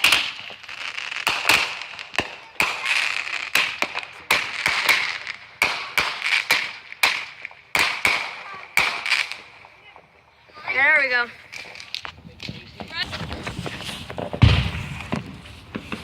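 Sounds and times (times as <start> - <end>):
firework bangs: 0.0 - 16.0
firework hiss: 13.1 - 16.0.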